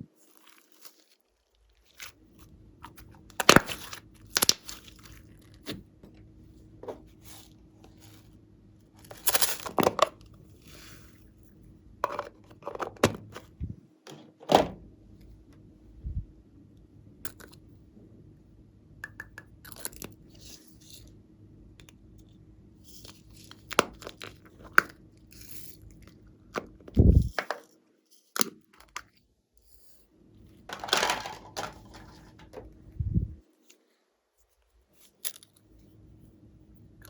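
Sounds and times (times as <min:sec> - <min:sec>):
plastic packaging crinkling: 0:02.9 - 0:05.8, 0:30.7 - 0:32.7.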